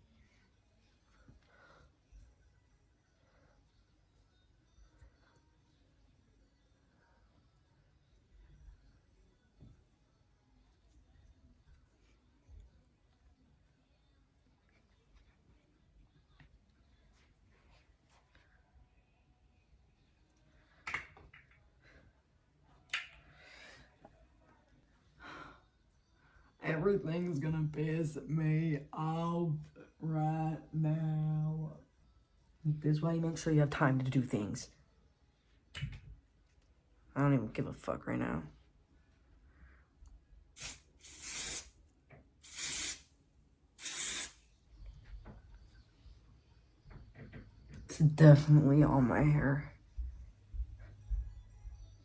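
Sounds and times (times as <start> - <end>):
soft hiss: 38.5 - 47.9
hair spray hissing: 40.6 - 41.8, 42.4 - 43.1, 43.8 - 44.5.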